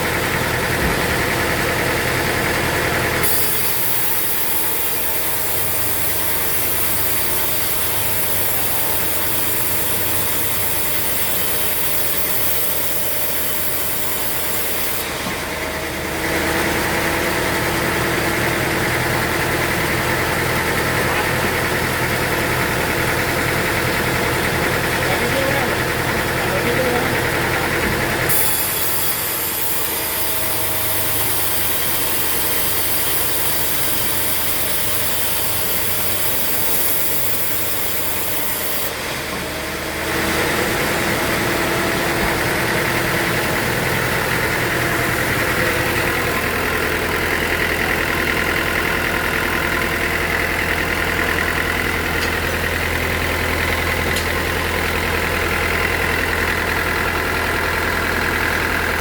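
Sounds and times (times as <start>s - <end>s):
sawmill machinery droning: 0.0s - 59.0s.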